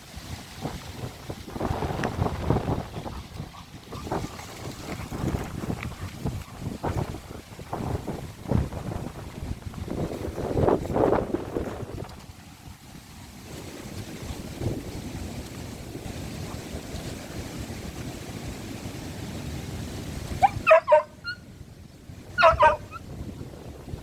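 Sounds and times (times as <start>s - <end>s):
wind buffeting microphone: 0.0s - 24.0s
dog barking: 20.4s - 21.4s, 22.4s - 23.0s.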